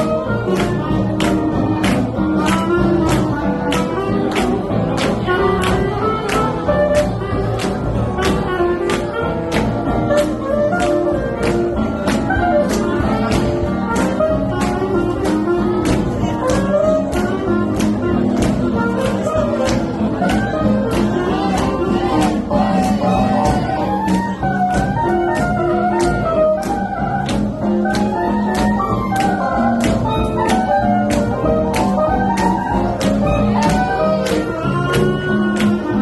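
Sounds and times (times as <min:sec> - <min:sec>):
swing jazz music: 0:00.0 - 0:36.0
person singing: 0:12.3 - 0:27.3, 0:28.5 - 0:36.0.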